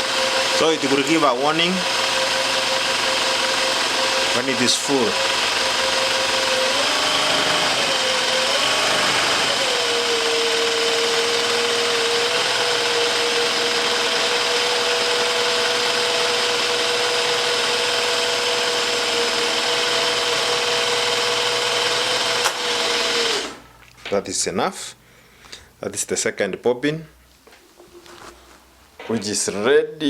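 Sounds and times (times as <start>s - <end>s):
sewing machine motor whine: 0.0s - 23.6s.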